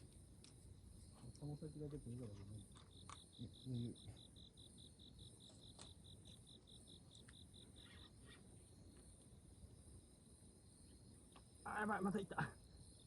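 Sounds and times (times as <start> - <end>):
insect high chirp: 0.0 - 13.0
insect trill: 0.0 - 13.0
faint clicks: 2.3 - 3.2.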